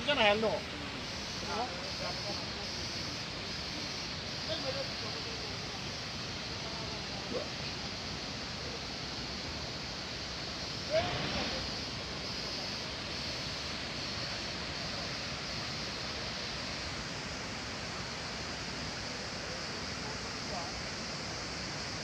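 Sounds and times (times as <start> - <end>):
waterfall rushing over rock: 4.5 - 22.0.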